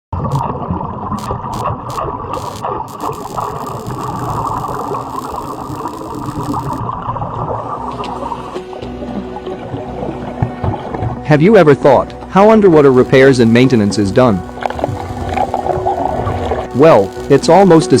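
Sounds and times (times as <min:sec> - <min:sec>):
underwater welding arc crackling: 0:00.2 - 0:00.5, 0:01.1 - 0:06.8, 0:07.8 - 0:08.7, 0:12.7 - 0:18.0
hissing bursts: 0:01.2 - 0:06.8, 0:12.9 - 0:18.0.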